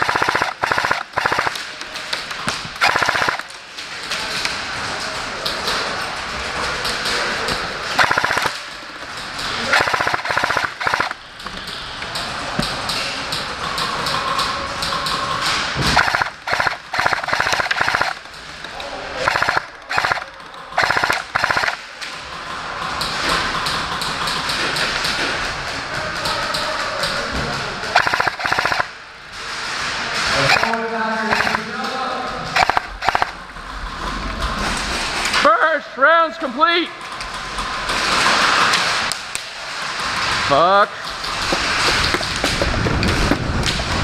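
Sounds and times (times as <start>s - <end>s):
airsoft guns firing bursts: 0.0s - 1.7s, 2.7s - 3.6s, 7.8s - 8.6s, 9.4s - 11.2s, 13.7s - 18.4s, 19.2s - 21.9s, 27.9s - 29.0s, 30.4s - 31.7s, 32.5s - 33.4s.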